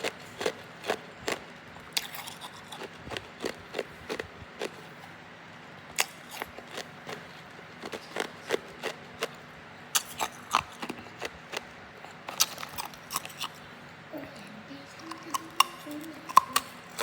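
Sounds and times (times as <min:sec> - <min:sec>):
ice crunching between teeth: 0:00.0 - 0:04.8, 0:10.0 - 0:13.6.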